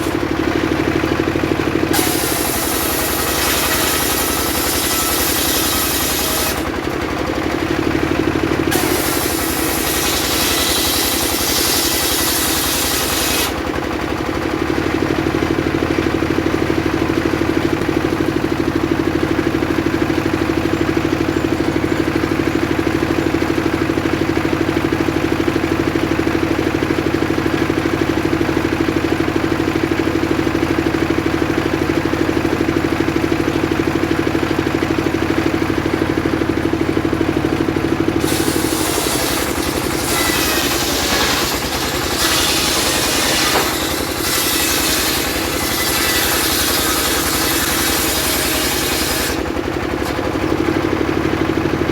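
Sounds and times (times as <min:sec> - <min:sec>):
saw cutting wood: 0:00.0 - 0:14.9, 0:36.3 - 0:50.8
saw engine running: 0:00.0 - 0:51.9.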